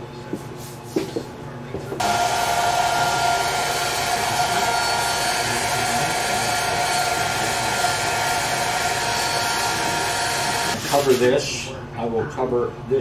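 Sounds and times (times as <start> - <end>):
hot-air gun blowing with whine: 2.0 - 11.2.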